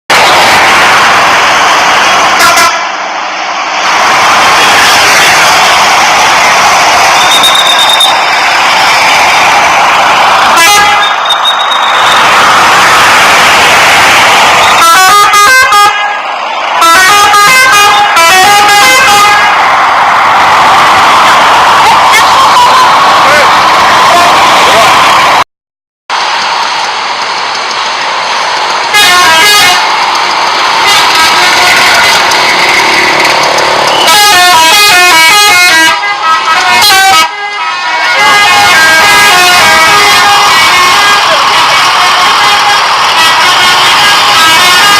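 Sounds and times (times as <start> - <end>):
multi-tone air horn tune: 2.4 - 3.0, 10.5 - 12.1, 14.6 - 19.6, 28.9 - 30.0, 30.8 - 32.4, 33.9 - 44.9.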